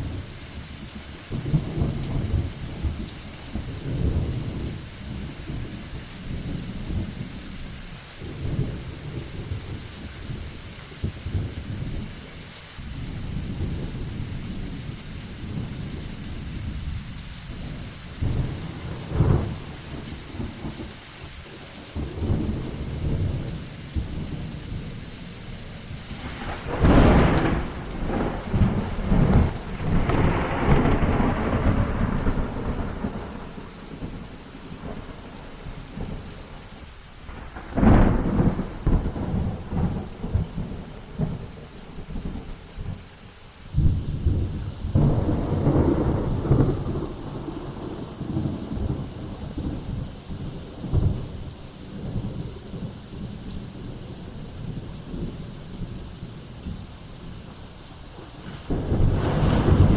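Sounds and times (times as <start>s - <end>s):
rain: 0.0s - 59.9s
rumbling thunder: 1.3s - 7.5s, 15.4s - 20.9s, 21.9s - 36.3s, 37.2s - 43.0s, 43.7s - 56.9s, 58.0s - 59.9s
sharp thunderclaps: 26.1s - 34.2s, 37.3s - 42.4s, 43.8s - 51.4s, 58.2s - 59.9s.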